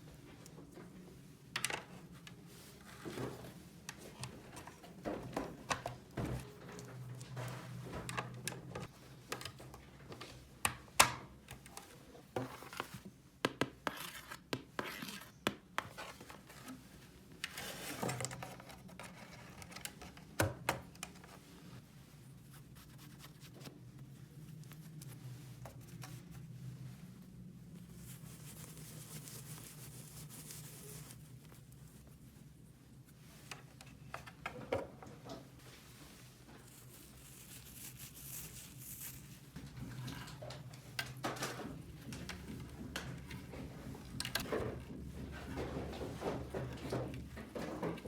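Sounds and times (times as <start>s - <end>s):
scratching and rubbing: 36.6s - 40.4s.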